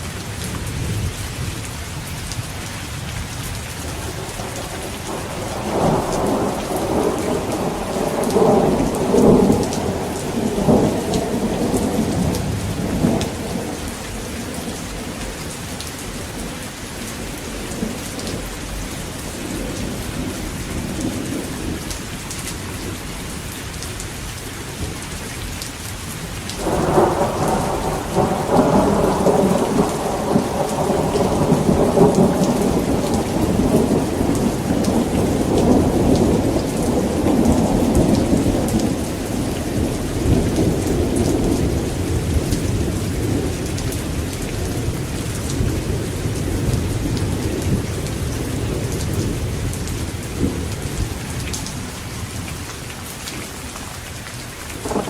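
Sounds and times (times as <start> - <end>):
heavy rain: 0.0 - 55.0
thunder rumbling: 3.9 - 22.0, 26.5 - 52.5
loud thunder peal: 26.6 - 43.6.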